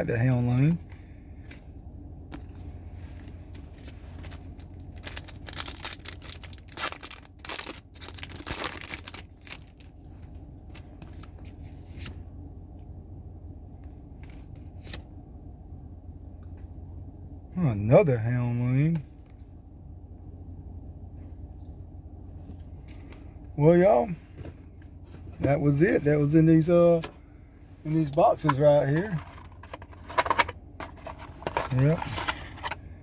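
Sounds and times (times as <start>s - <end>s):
cards clicking and rustling: 3.8s - 9.8s
foil wrapper tearing and crinkling: 4.2s - 9.9s.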